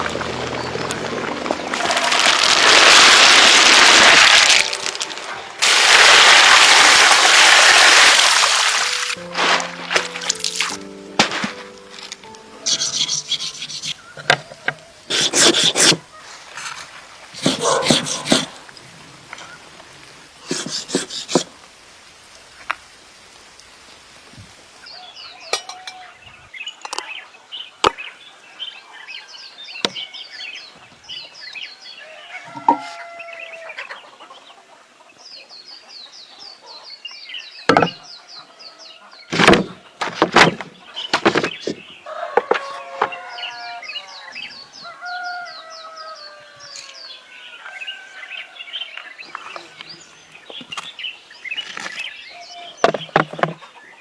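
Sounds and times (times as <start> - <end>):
birds chirping and calling: 11.8 - 16.8, 17.4 - 18.6, 40.6 - 54.0.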